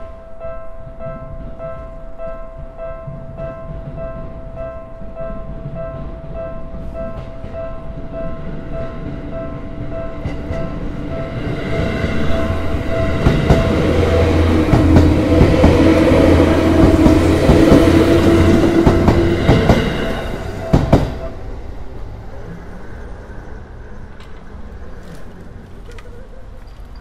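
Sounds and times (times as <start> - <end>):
crossing warning bell: 0.0 - 21.4
train wheels clacking over rails: 9.8 - 21.4.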